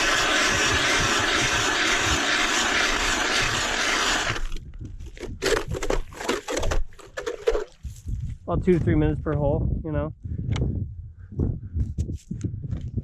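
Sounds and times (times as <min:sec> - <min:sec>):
ice auger grinding through ice: 0:00.0 - 0:04.7.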